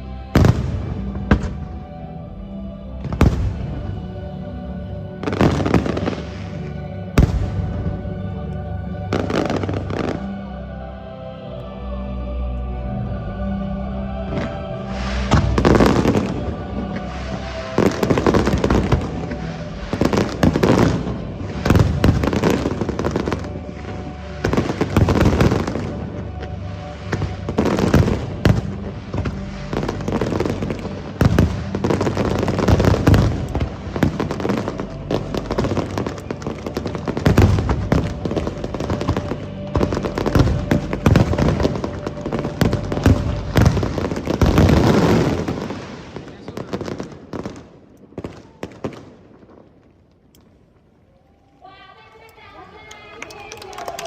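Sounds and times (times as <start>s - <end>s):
music playing: 0.0s - 47.6s, 51.7s - 54.0s
fireworks bursting: 5.2s - 8.0s, 14.3s - 49.6s.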